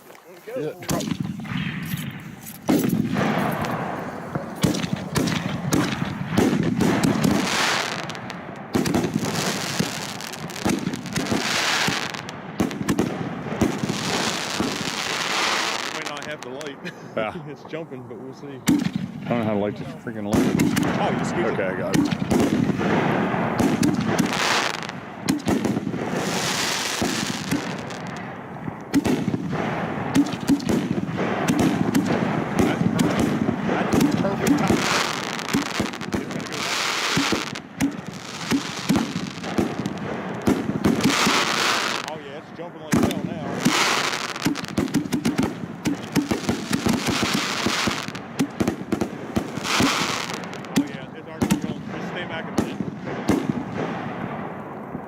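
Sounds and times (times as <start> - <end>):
sharp cracks and pops: 0.0 - 11.4, 23.6 - 25.8, 26.4 - 42.2, 42.9 - 54.0
firework hissing: 0.0 - 12.3, 13.6 - 16.4, 22.0 - 28.2, 29.1 - 42.2, 43.5 - 48.2, 48.9 - 50.8.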